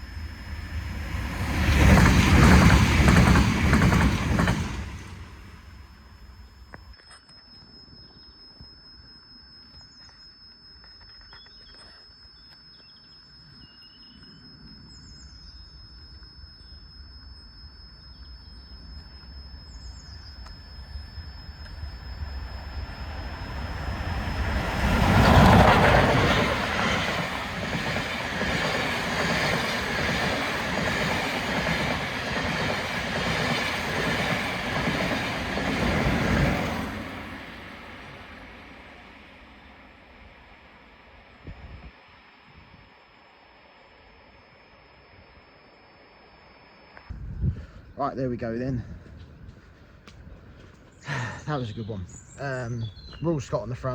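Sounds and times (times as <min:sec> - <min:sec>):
steam locomotive passing: 0:00.0 - 0:06.7, 0:18.8 - 0:42.3
train wheels clattering over rail joints: 0:01.4 - 0:05.5.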